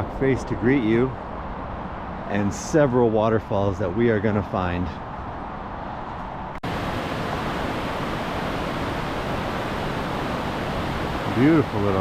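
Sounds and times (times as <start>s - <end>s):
steady rushing noise: 5.0s - 12.0s
waterfall rushing: 6.6s - 12.0s.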